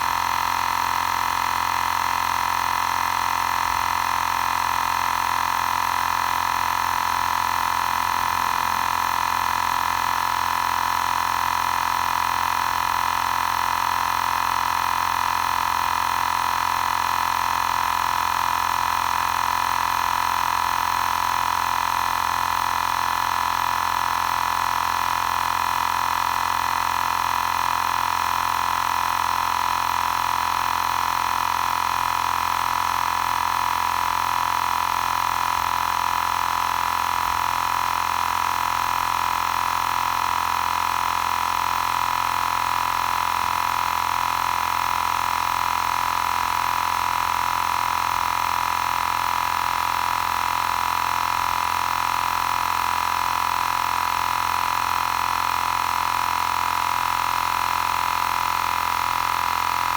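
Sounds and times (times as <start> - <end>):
air compressor humming: 17.6 - 59.9.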